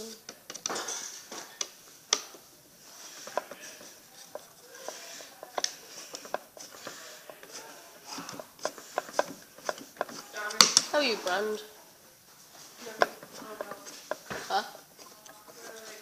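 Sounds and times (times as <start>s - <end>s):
small objects clicking and knocking: 0.0s - 11.0s.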